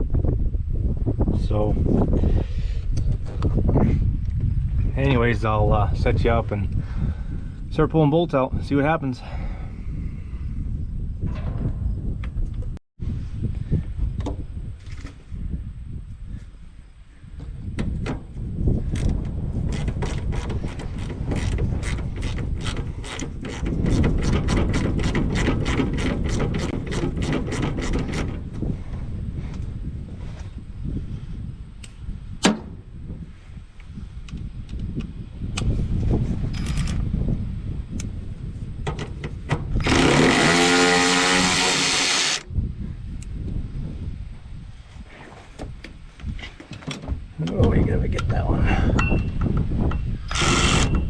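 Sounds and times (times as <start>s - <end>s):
steady low rumble: 9.5s - 38.8s
power tool spinning up: 39.8s - 42.4s, 50.3s - 51.0s.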